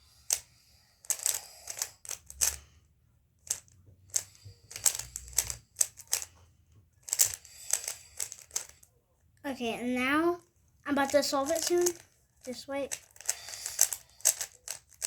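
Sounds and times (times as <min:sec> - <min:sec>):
puzzle cube clicking: 0:01.0 - 0:02.6, 0:03.4 - 0:06.3, 0:07.0 - 0:08.8, 0:11.0 - 0:15.0.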